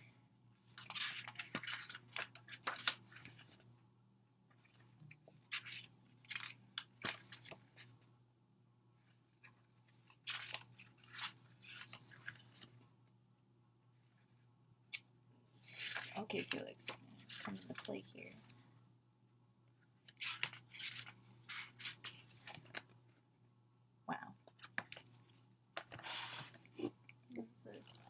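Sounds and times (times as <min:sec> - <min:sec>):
paper and card rustling: 0:00.7 - 0:03.6, 0:04.6 - 0:08.0, 0:09.4 - 0:12.8, 0:15.6 - 0:18.6, 0:20.1 - 0:23.0.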